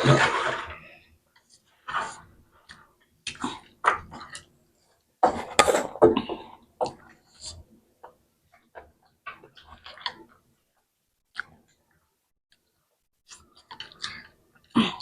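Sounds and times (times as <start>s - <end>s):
person clearing throat: 14.7s - 15.0s.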